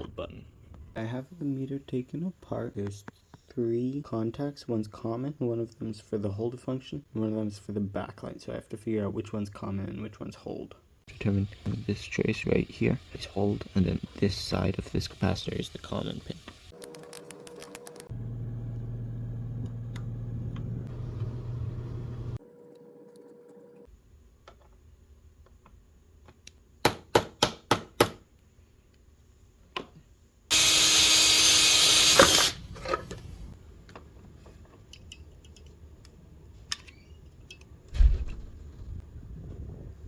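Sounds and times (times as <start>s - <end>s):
high-pitched grinding: 30.5s - 32.6s
power tool motor hum: 30.5s - 32.6s.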